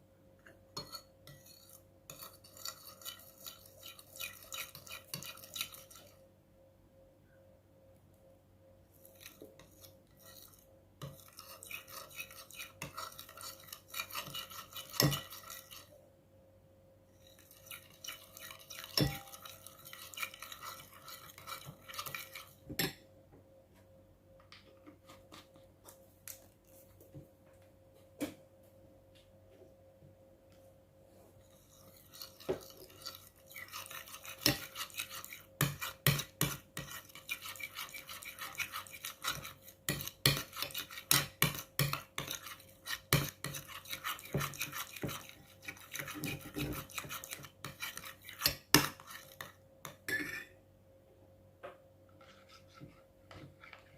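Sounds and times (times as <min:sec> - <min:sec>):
utensil stirring slime in bowl: 0:00.4 - 0:06.3, 0:08.9 - 0:16.0, 0:17.1 - 0:23.0, 0:31.2 - 0:50.6, 0:52.2 - 0:53.9.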